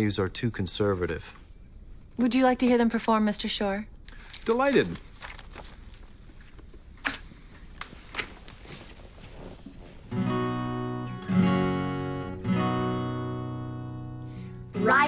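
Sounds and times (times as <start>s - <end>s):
acoustic guitar chord strums: 10.1s - 15.0s.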